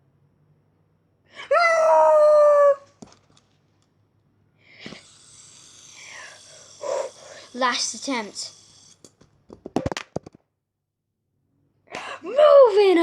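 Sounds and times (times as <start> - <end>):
loud high-pitched cry: 5.0 - 9.0.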